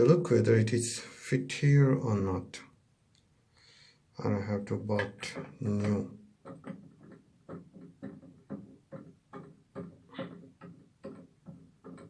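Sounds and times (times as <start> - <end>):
plastic flush mechanism clicking: 4.5 - 12.0.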